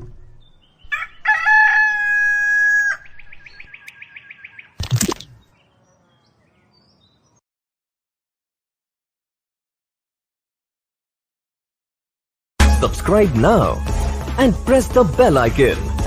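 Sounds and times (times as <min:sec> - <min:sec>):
rooster crowing: 0:00.9 - 0:03.3.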